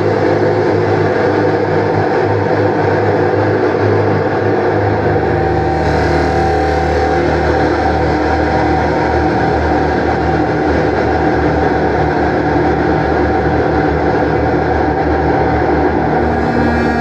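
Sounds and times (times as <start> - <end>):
contrabass clarinet with reverb: 4.1 - 10.4, 15.0 - 17.0.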